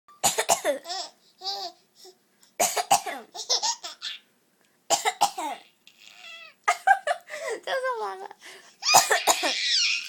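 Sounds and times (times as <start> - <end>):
girl coughing: 0.2 - 0.8, 2.6 - 3.3, 4.9 - 5.6, 8.8 - 9.7
baby squealing laughs: 3.3 - 4.3, 8.8 - 10.0.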